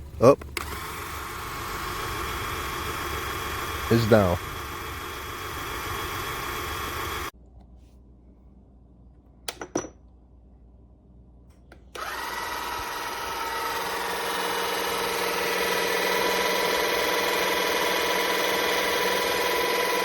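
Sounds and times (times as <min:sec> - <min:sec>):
electric jack motor whining: 0:00.4 - 0:07.3, 0:11.9 - 0:20.0.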